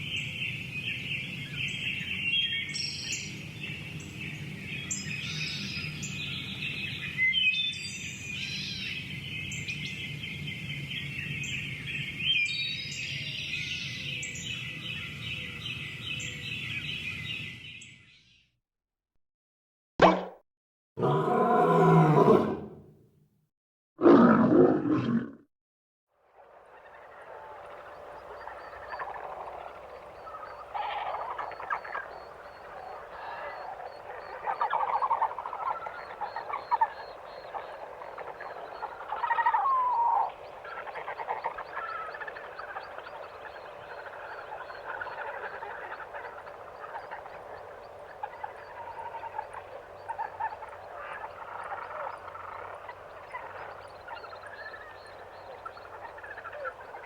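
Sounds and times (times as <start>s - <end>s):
birds calling and chattering: 26.8s - 57.0s.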